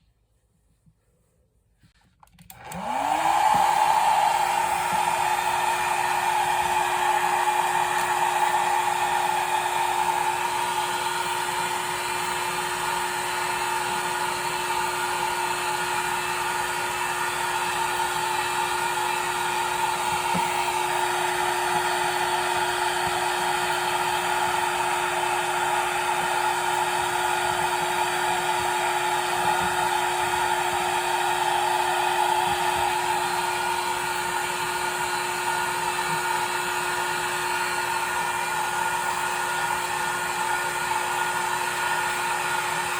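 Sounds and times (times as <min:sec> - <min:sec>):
hair dryer running: 0:02.4 - 0:42.9.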